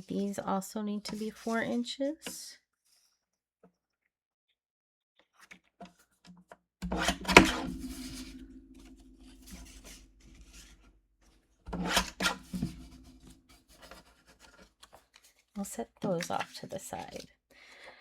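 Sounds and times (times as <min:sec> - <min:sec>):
paper trimmer cutting paper: 0:06.8 - 0:10.7, 0:11.7 - 0:13.3.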